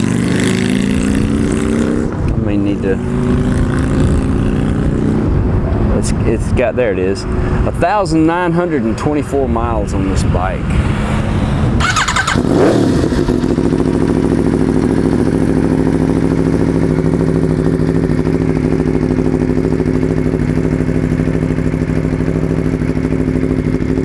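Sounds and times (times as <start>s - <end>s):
motorcycle engine idling: 11.8s - 24.0s.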